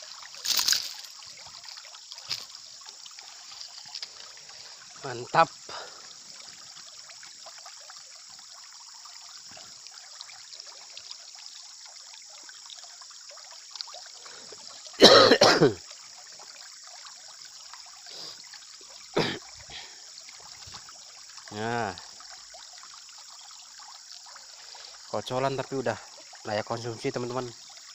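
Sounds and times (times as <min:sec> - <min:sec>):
background hiss: 0:00.0 - 0:27.9
person clearing throat: 0:15.0 - 0:15.8, 0:19.2 - 0:19.5.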